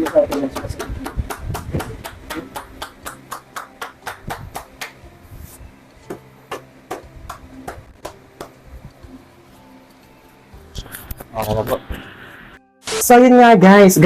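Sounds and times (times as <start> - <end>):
sharp tapping on the body: 6.1 - 8.6.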